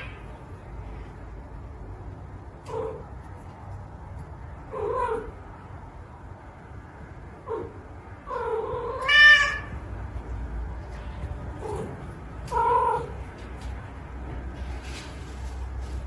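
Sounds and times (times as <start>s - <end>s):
cat meowing: 0.0s - 0.3s, 8.3s - 9.8s.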